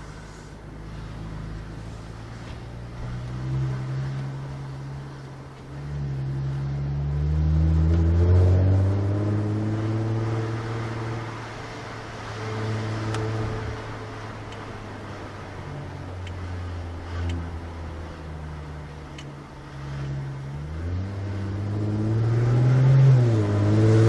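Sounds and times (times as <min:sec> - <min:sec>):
car engine revving: 0:00.0 - 0:24.0.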